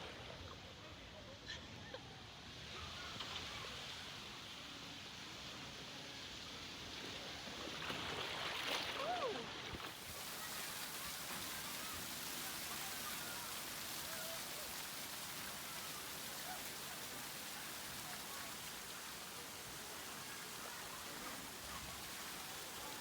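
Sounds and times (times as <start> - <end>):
water spraying and splashing: 6.4 - 23.0.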